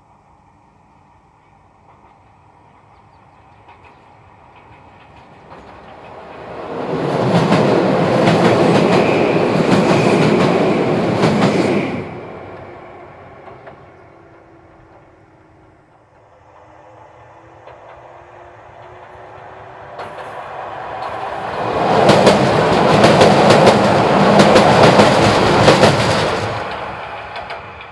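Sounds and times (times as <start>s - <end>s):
electric train passing: 0.0s - 27.9s
wheels clicking over rail joints: 1.8s - 11.8s, 17.6s - 27.9s.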